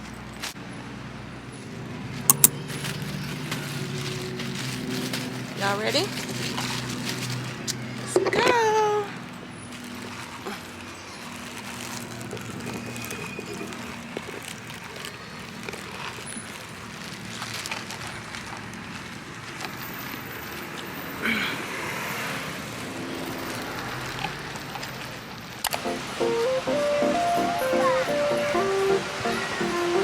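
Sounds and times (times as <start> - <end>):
traffic passing: 0.0 - 30.0.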